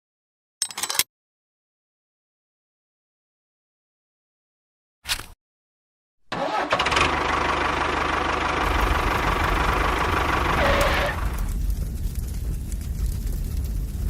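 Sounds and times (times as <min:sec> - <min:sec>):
motor running with low rumble: 0:06.9 - 0:14.0.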